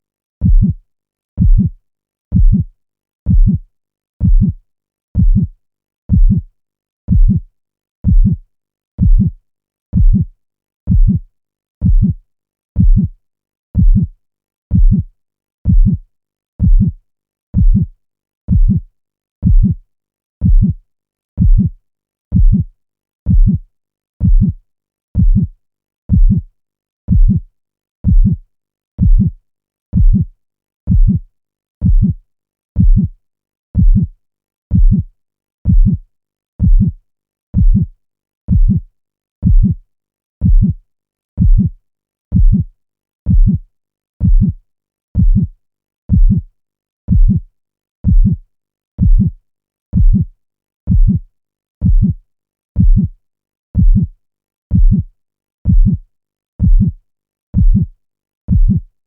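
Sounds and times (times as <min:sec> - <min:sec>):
heartbeat thuds: 0:00.4 - 0:00.8, 0:01.4 - 0:01.7, 0:02.3 - 0:02.7, 0:03.3 - 0:03.6, 0:04.2 - 0:04.6, 0:05.2 - 0:05.5, 0:06.1 - 0:06.4, 0:07.1 - 0:07.4, 0:08.0 - 0:08.4, 0:09.0 - 0:09.3, 0:10.0 - 0:10.2, 0:10.9 - 0:11.2, 0:11.8 - 0:12.2, 0:12.8 - 0:13.1, 0:13.8 - 0:14.1, 0:14.7 - 0:15.0, 0:15.7 - 0:16.0, 0:16.6 - 0:17.0, 0:17.6 - 0:17.9, 0:18.5 - 0:18.8, 0:19.4 - 0:19.8, 0:20.4 - 0:20.8, 0:21.4 - 0:21.7, 0:22.3 - 0:22.6, 0:23.3 - 0:23.6, 0:24.2 - 0:24.6, 0:25.2 - 0:25.5, 0:26.1 - 0:26.4, 0:27.1 - 0:27.4, 0:28.0 - 0:28.4, 0:29.0 - 0:29.3, 0:30.0 - 0:30.2, 0:30.9 - 0:31.2, 0:31.8 - 0:32.2, 0:32.8 - 0:33.1, 0:33.8 - 0:34.1, 0:34.7 - 0:35.0, 0:35.7 - 0:36.0, 0:36.6 - 0:37.0, 0:37.6 - 0:37.9, 0:38.5 - 0:38.8, 0:39.4 - 0:39.8, 0:40.4 - 0:40.7, 0:41.4 - 0:41.7, 0:42.3 - 0:42.6, 0:43.3 - 0:43.6, 0:44.2 - 0:44.6, 0:45.2 - 0:45.5, 0:46.1 - 0:46.4, 0:47.1 - 0:47.4, 0:48.0 - 0:48.4, 0:49.0 - 0:49.3, 0:50.0 - 0:50.2, 0:50.9 - 0:51.2, 0:51.8 - 0:52.1, 0:52.8 - 0:53.1, 0:53.8 - 0:54.1, 0:54.7 - 0:55.0, 0:55.7 - 0:56.0, 0:56.6 - 0:56.9, 0:57.6 - 0:57.8, 0:58.5 - 0:58.8.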